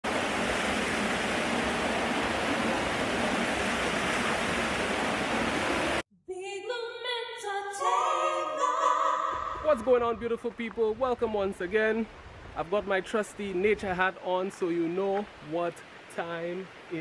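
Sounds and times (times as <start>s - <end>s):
waterfall rushing: 0.0s - 6.0s.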